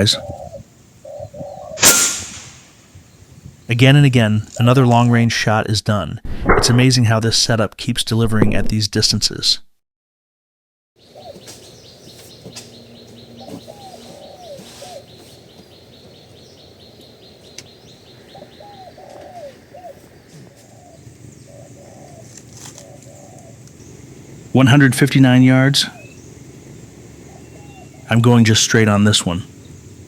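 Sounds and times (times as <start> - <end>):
doves cooing: 0.0 - 1.9, 11.0 - 30.0.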